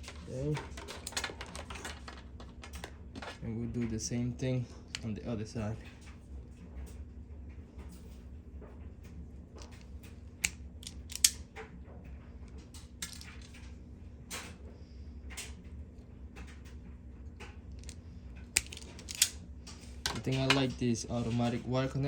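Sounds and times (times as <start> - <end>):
clicks and rustles of handling: 0.0 - 14.6, 15.3 - 22.0
wire strippers snapping: 10.4 - 11.4, 17.8 - 19.4.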